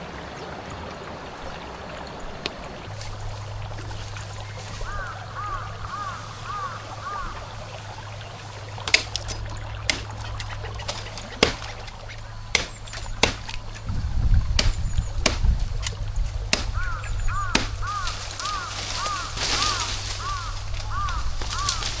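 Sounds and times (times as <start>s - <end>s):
stream trickling: 0.0s - 22.0s
sharp knocks and snaps: 8.8s - 13.9s, 14.5s - 22.0s
bird repeating short call: 16.7s - 22.0s.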